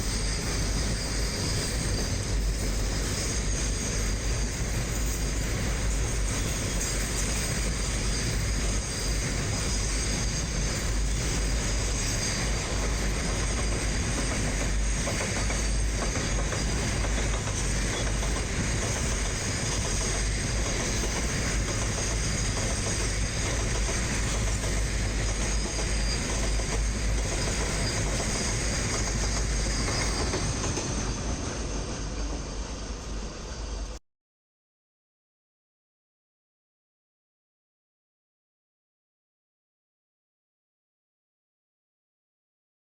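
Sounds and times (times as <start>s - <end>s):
faint high wheel squeal: 0.0s - 34.0s
freight train wheels on rails: 0.0s - 34.0s.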